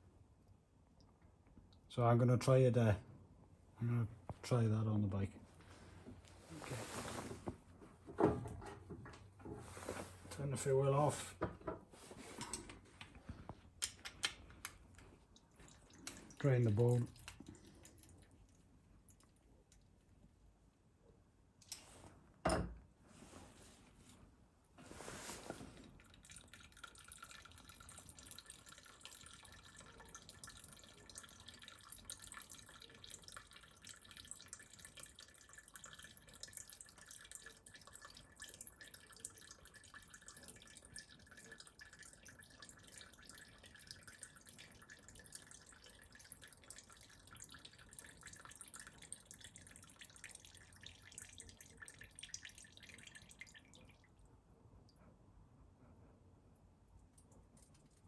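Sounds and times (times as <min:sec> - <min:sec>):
fuel trickling and dripping: 0:14.4 - 0:20.0, 0:25.6 - 0:54.3.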